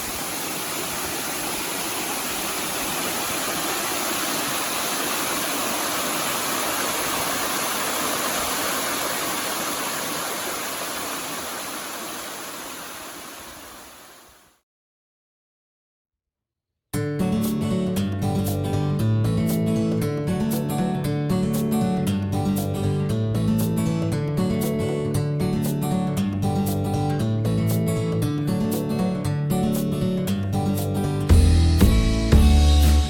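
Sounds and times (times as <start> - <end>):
waterfall roaring: 0.0 - 14.4.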